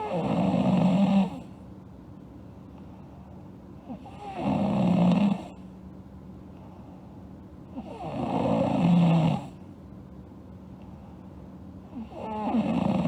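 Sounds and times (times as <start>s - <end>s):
girl snoring: 0.0s - 1.5s, 3.9s - 5.5s, 7.8s - 9.6s, 11.9s - 13.0s.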